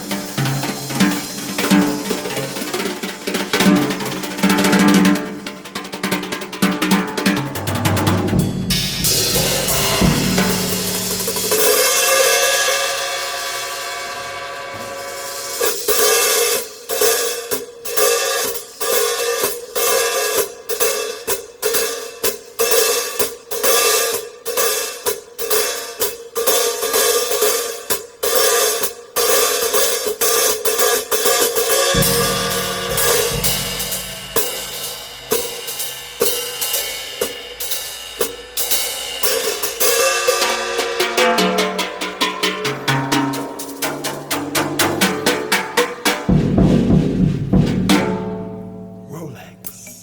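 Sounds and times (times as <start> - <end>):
cymbal and hi-hat beat: 0.0 - 50.0
low bass part: 8.3 - 11.7, 32.0 - 35.2.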